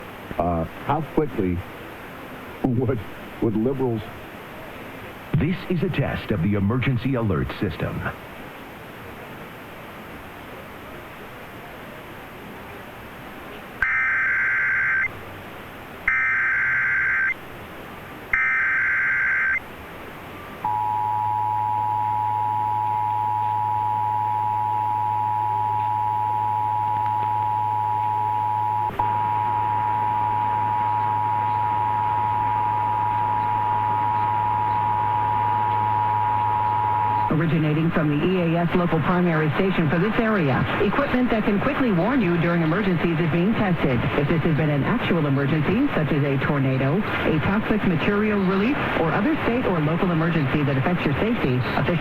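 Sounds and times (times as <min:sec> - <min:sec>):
two-tone attention signal: 0:13.8 - 0:15.1, 0:16.1 - 0:17.4, 0:18.4 - 0:19.6, 0:20.7 - 0:37.3
low hum: 0:13.8 - 0:40.2
harsh data bursts: 0:16.1 - 0:17.4, 0:18.3 - 0:19.6.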